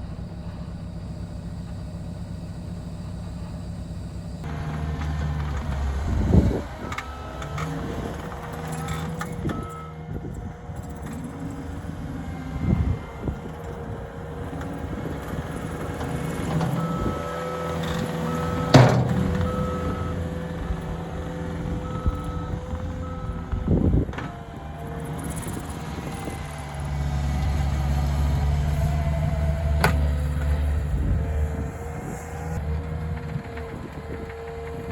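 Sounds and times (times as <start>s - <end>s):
backup alarm beeping: 0.0s - 4.5s, 6.3s - 10.1s, 11.8s - 24.7s
heavy diesel engine running: 0.0s - 34.9s.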